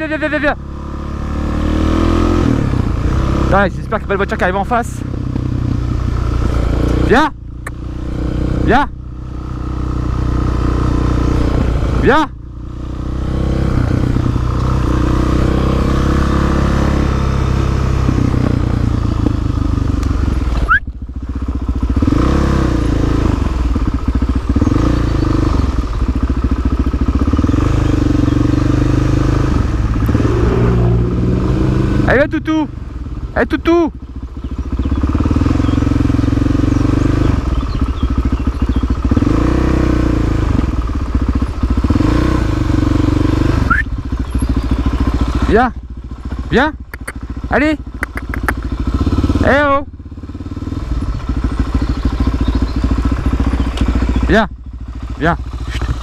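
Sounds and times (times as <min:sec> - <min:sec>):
motorcycle engine running at low revs: 0:00.0 - 0:56.0.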